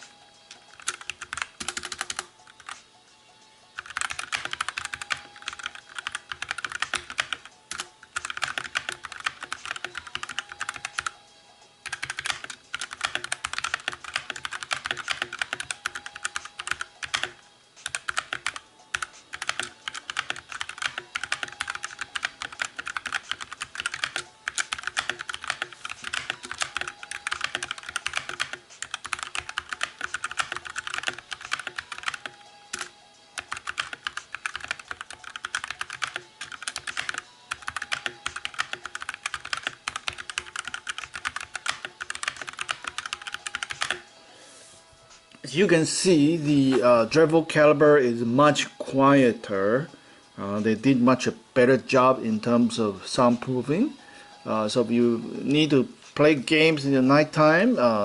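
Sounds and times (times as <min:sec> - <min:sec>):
mechanical keyboard typing: 0:00.5 - 0:02.8, 0:03.8 - 0:11.2, 0:11.8 - 0:44.1.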